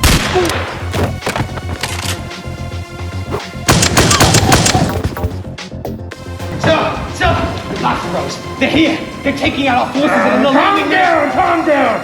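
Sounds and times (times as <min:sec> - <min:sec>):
gunshot sound effects: 0:00.0 - 0:00.8
action music with steady beat: 0:00.0 - 0:12.0.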